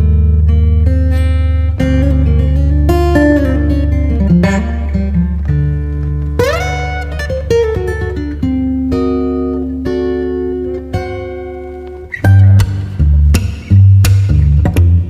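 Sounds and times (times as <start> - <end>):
plucked string notes: 0.0 - 15.0
bass-heavy music: 12.2 - 15.0.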